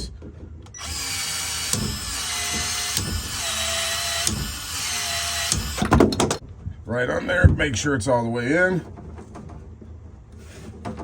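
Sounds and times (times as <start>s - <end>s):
expansion tool motor whirring: 0.8s - 5.9s.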